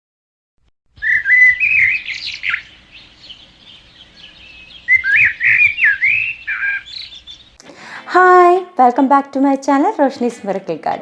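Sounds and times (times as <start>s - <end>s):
bird chirping and warbling: 1.0s - 7.6s.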